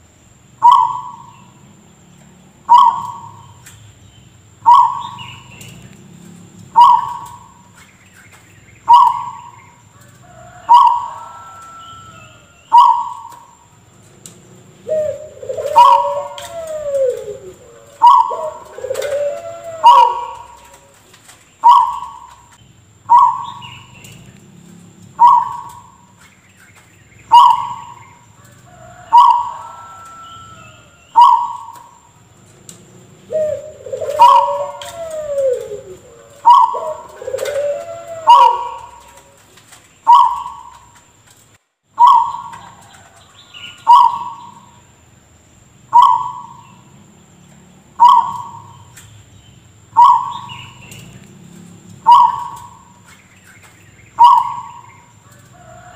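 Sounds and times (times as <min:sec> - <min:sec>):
dove cough-like calls: 0:00.6 - 0:01.6, 0:02.6 - 0:03.6, 0:04.6 - 0:05.9, 0:06.6 - 0:07.7, 0:08.9 - 0:09.7, 0:14.5 - 0:24.2, 0:25.0 - 0:26.1, 0:27.3 - 0:28.2, 0:31.2 - 0:31.9, 0:33.2 - 0:40.8, 0:42.0 - 0:42.9, 0:43.9 - 0:44.8, 0:45.9 - 0:46.8, 0:48.0 - 0:48.9, 0:52.0 - 0:52.9, 0:54.2 - 0:55.0
lower down-sliding bird calls: 0:04.6 - 0:32.1, 0:32.8 - 0:41.1, 0:42.0 - 0:44.8, 0:48.0 - 0:49.2, 0:49.9 - 0:55.9.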